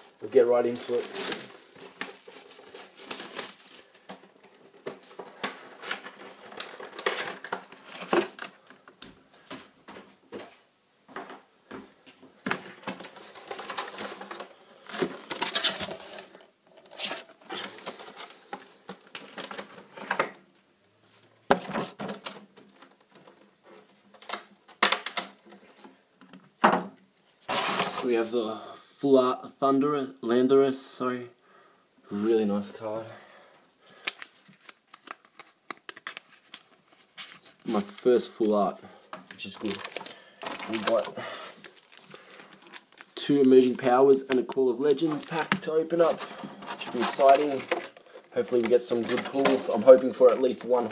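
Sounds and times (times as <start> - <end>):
wrapping crinkling and rustling: 0.4 - 8.8, 12.4 - 20.1, 33.8 - 50.9.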